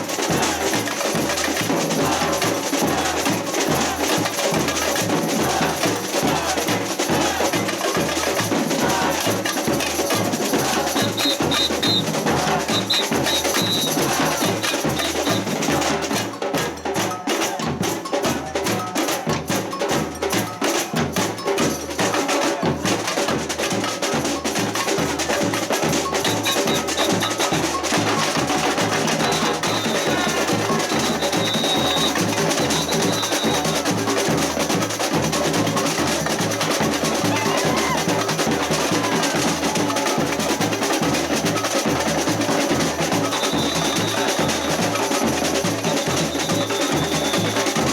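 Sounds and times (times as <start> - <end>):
wood-block hand percussion: 0.0 - 47.9
high held tones: 10.9 - 15.7, 29.0 - 34.0, 43.1 - 47.9.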